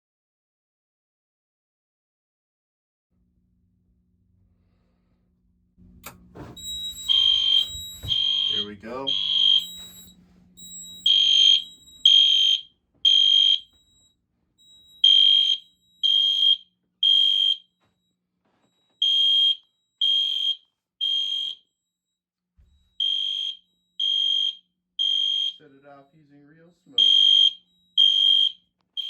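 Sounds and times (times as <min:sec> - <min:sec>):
fire alarm sounder beeping: 0:06.0 - 0:26.1, 0:26.7 - 0:29.0.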